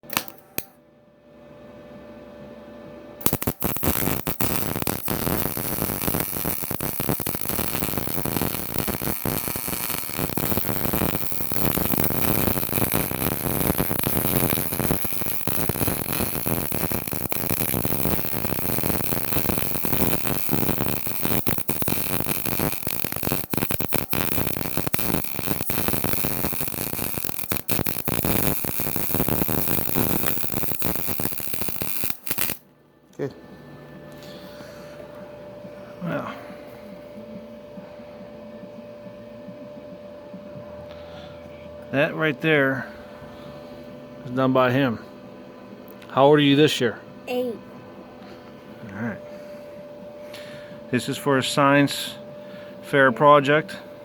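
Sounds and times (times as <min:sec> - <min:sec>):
arc welding crackling sizzle: 0:00.0 - 0:00.8, 0:03.2 - 0:32.7.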